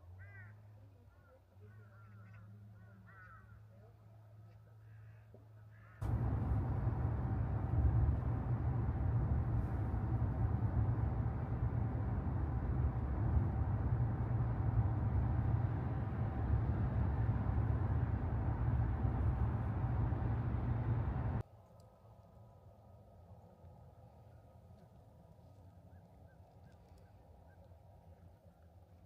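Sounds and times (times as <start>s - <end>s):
vehicle engine rumble: 6.0s - 21.4s
faint steady tone: 6.0s - 21.8s.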